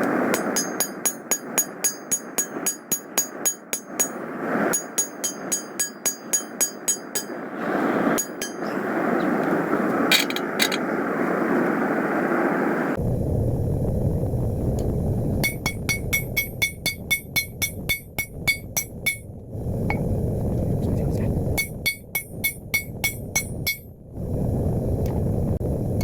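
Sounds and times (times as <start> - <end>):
hammer striking steel on anvil: 0.0 - 7.4, 8.2 - 8.7, 15.4 - 19.3, 21.6 - 23.9
steady rushing noise: 0.0 - 26.0.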